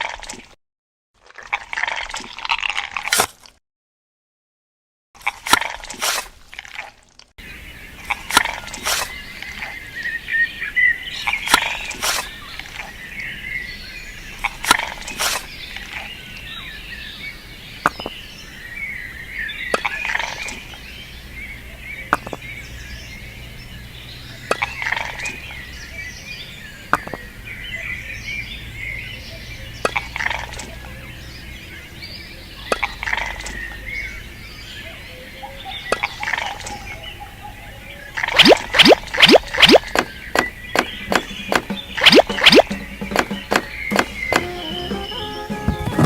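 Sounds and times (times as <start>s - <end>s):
birds chirping: 7.4s - 46.0s
sharp clicks and taps: 38.4s - 46.0s.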